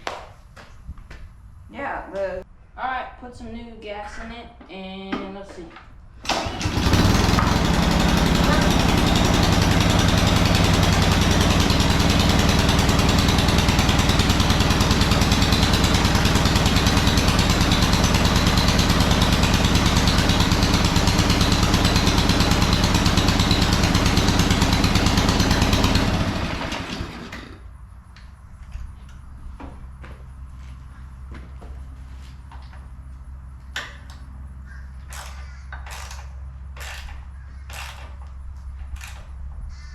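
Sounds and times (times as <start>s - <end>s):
small gas engine running: 6.2s - 27.7s, 35.1s - 38.3s, 38.9s - 39.3s.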